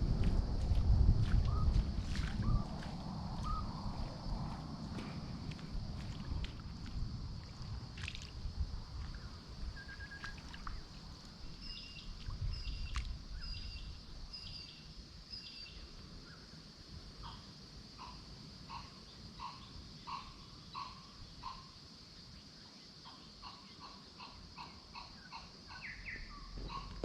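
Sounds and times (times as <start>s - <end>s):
wind rumble on microphone: 0.0s - 17.3s, 26.0s - 27.0s
high insect drone: 0.0s - 27.0s
lower repeated bird call: 3.4s - 3.9s, 9.7s - 15.8s, 17.2s - 21.8s, 23.0s - 27.0s.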